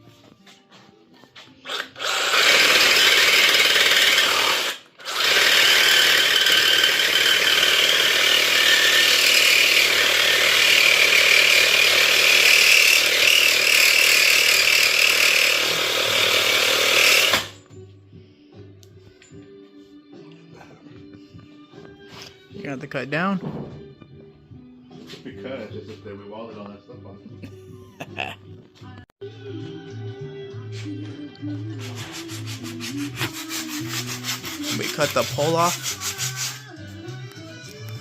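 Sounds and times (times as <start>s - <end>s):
power grinder cutting metal: 1.7s - 17.6s, 32.2s - 36.6s.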